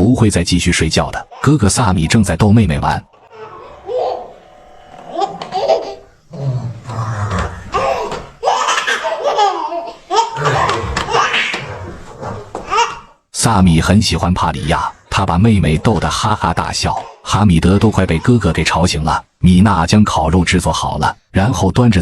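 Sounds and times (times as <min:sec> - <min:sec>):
baby laughing: 0:03.2 - 0:04.3, 0:05.1 - 0:11.8.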